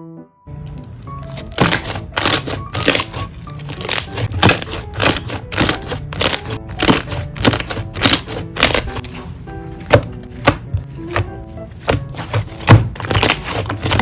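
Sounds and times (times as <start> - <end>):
background music: 0.0 - 14.0
slime clicking and popping: 0.8 - 9.0, 11.9 - 14.0.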